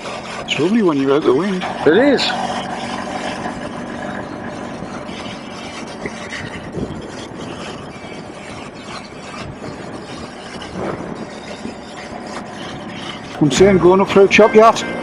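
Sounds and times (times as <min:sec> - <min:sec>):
road and riding noise: 0:00.0 - 0:15.0
motorcycle engine running: 0:01.3 - 0:05.3.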